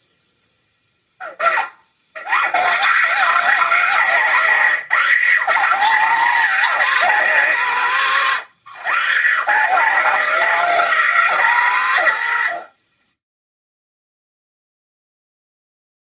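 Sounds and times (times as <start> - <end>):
cartoon girl wailing distorted: 2.2 - 12.7.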